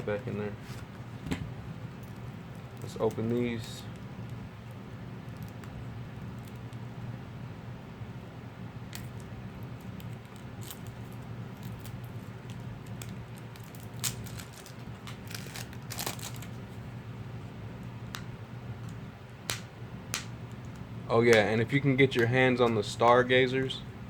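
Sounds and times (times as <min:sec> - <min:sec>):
steady low hum: 0:00.0 - 0:24.0
plastic packaging crinkling and tearing: 0:09.9 - 0:16.6.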